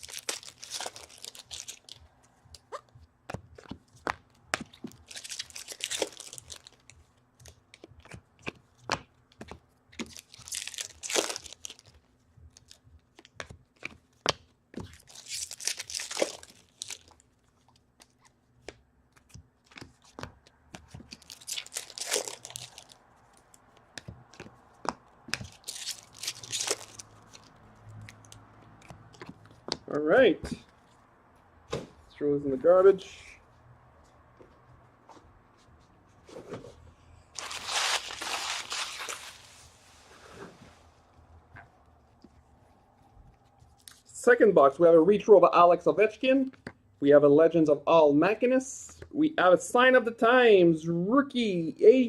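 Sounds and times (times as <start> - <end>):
card pack wrappers tearing: 0.0 - 2.0, 5.0 - 6.9, 10.0 - 11.9, 14.9 - 17.3, 21.1 - 23.6, 25.3 - 27.5, 37.4 - 39.5
wrapper crinkles and clicks: 0.0 - 2.0, 5.0 - 7.0, 10.0 - 12.0, 14.9 - 18.2, 21.1 - 23.6, 25.3 - 27.5, 37.4 - 39.5.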